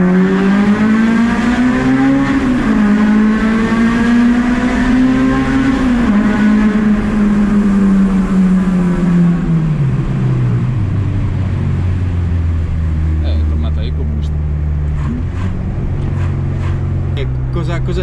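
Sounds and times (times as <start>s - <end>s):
car engine revving hard: 0.0s - 10.2s.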